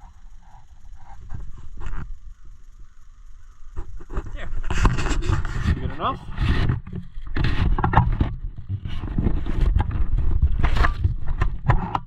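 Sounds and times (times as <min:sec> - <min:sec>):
steady low rumble: 0:00.0 - 0:08.6
scraping: 0:03.7 - 0:12.0.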